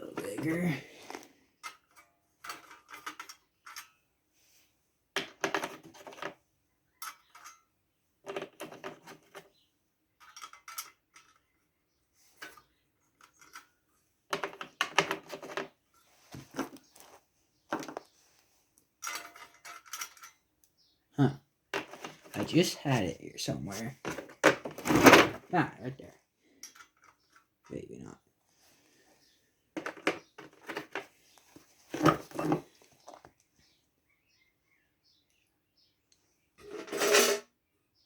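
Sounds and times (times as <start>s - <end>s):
screws and metal parts clinking: 1.6s - 4.0s, 7.0s - 7.6s, 10.2s - 11.5s, 12.3s - 17.1s, 19.0s - 20.4s.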